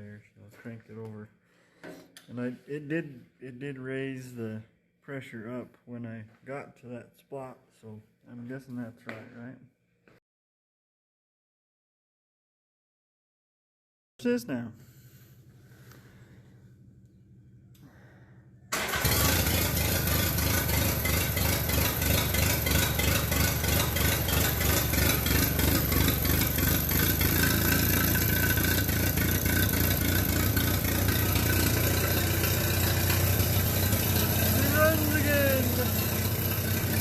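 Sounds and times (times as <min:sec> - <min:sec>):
tractor engine running: 0:18.7 - 0:37.0.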